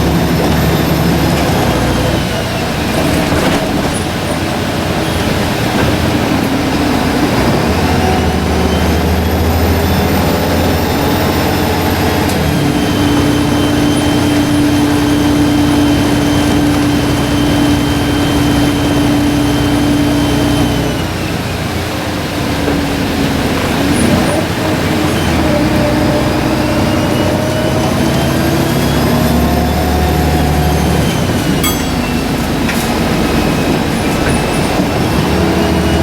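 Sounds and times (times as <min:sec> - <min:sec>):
diesel bus engine under load: 0:00.0 - 0:36.0.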